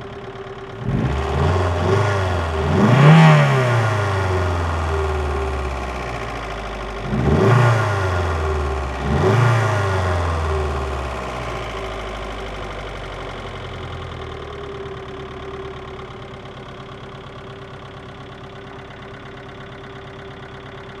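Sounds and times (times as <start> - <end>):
car engine revving and idling: 0.0 - 21.0.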